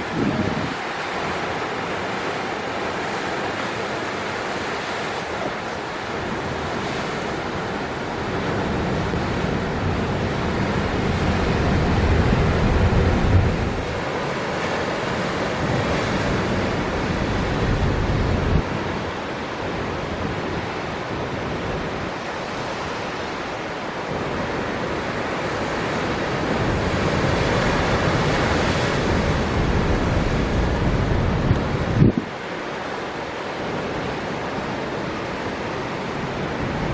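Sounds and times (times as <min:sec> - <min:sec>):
wind buffeting microphone: 0:00.0 - 0:02.3, 0:08.4 - 0:23.4, 0:24.0 - 0:32.4.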